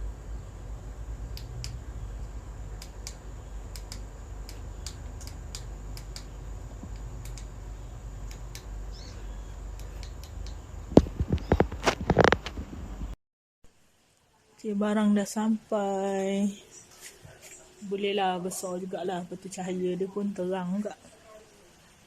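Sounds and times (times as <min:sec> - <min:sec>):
low steady hum: 0:00.0 - 0:22.0
light clicks: 0:01.3 - 0:07.5, 0:09.7 - 0:10.6.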